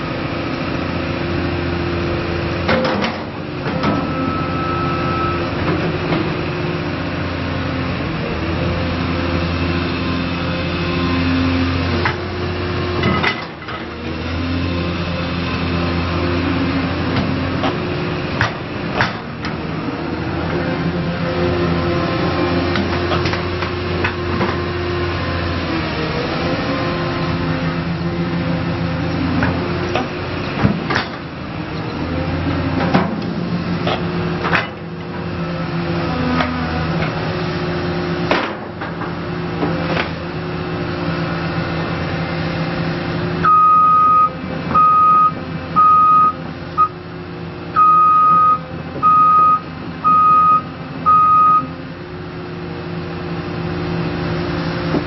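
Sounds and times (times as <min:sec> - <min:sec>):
excavator diesel engine running: 0:00.0 - 0:55.0
travel alarm beeps: 0:04.1 - 0:05.5, 0:43.4 - 0:47.0, 0:47.8 - 0:51.7.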